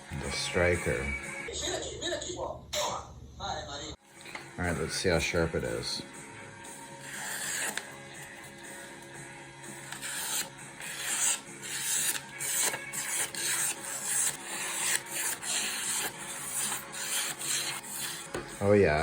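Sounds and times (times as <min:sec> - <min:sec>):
knife blade slicing paper: 0:07.0 - 0:07.9, 0:09.8 - 0:18.4.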